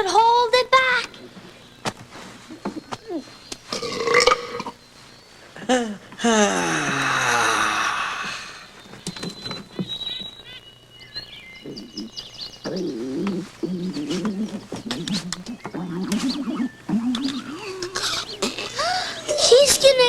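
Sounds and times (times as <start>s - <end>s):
long loud burp: 3.7s - 4.8s, 6.3s - 8.6s
warbling croaking voice: 6.2s - 8.7s, 11.6s - 19.7s.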